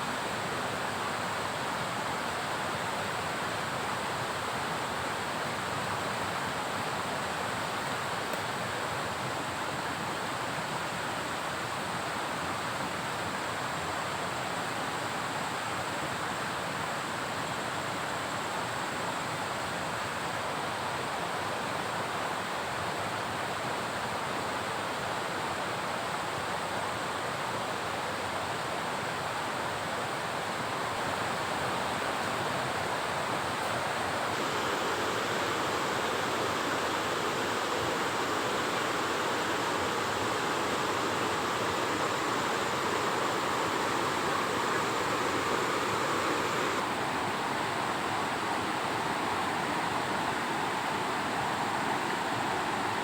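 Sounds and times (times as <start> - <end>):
rushing water: 32.4 - 53.0.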